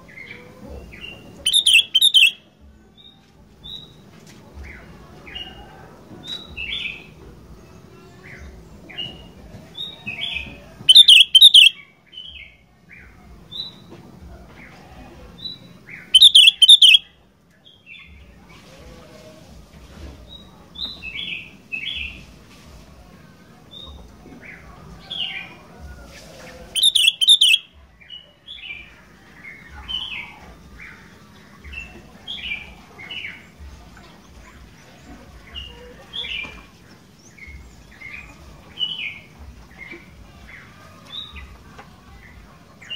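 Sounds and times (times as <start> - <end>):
bulbul chirping song: 0.9 - 4.0, 9.8 - 12.6, 15.4 - 17.2, 26.7 - 33.5.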